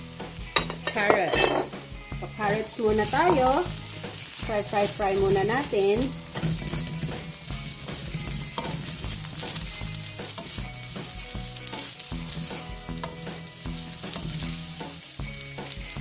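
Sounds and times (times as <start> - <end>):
carrots sizzling in frying pan: 0.0 - 16.0
utensil scraping and tapping pan: 7.9 - 9.6.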